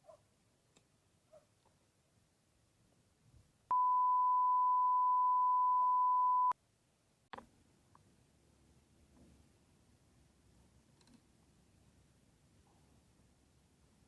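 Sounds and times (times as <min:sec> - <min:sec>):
electronic beep: 0:03.7 - 0:06.6.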